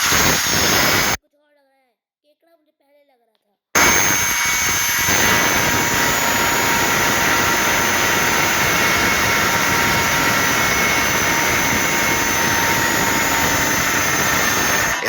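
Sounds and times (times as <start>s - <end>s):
high whining tones: 0.0s - 1.2s, 3.8s - 15.0s.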